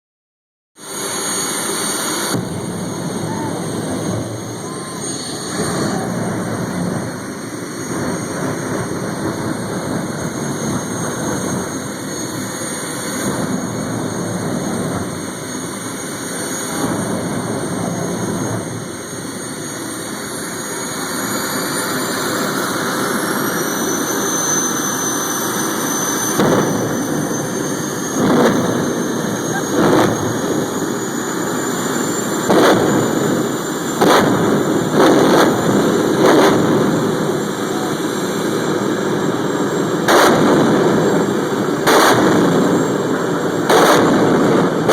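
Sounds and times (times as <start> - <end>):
jet turbine engine running: 0.8 - 44.9.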